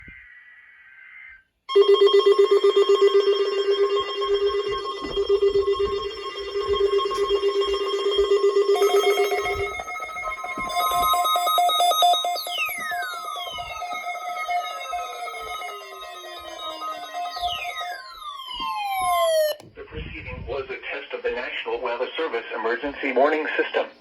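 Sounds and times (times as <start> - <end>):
electronic pulsing alarm tone: 1.7 - 19.6
high steady alarm tones: 1.7 - 19.8.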